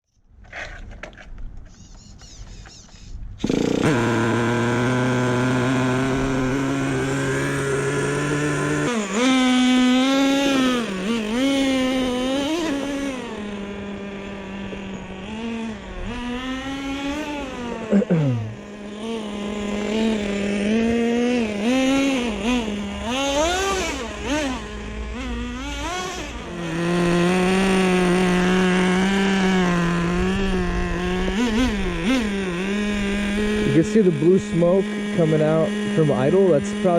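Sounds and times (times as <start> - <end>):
rc truck engine revving: 1.7 - 36.9.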